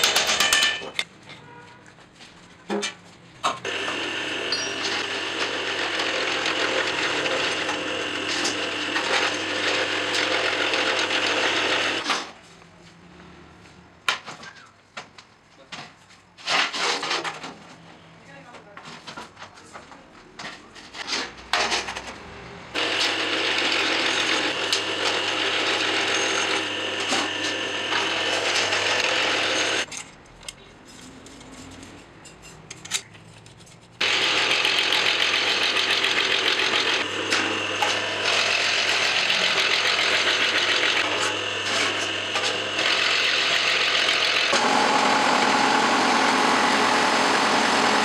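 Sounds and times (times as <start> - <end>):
metalworking machine clattering: 0.0 - 1.1.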